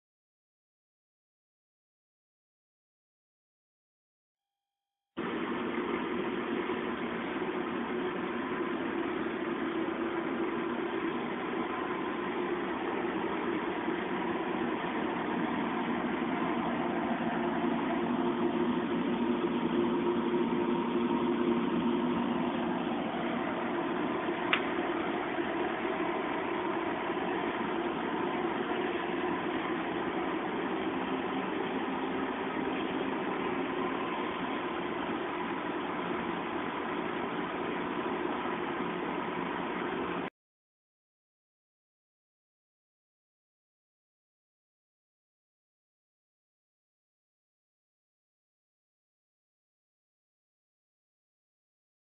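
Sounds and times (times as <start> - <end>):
air conditioner humming: 5.2 - 40.3.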